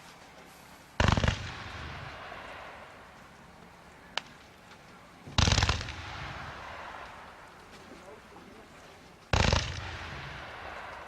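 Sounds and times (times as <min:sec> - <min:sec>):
fireworks rumble and hiss: 0:00.0 - 0:11.0
firework crack: 0:00.9 - 0:08.3, 0:09.3 - 0:11.0
fireworks bangs: 0:01.0 - 0:03.3, 0:05.2 - 0:08.3, 0:09.3 - 0:11.0.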